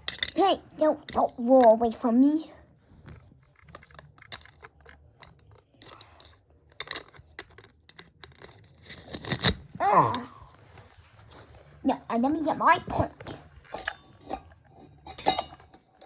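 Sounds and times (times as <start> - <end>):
loud ripping tearing: 8.9 - 9.8.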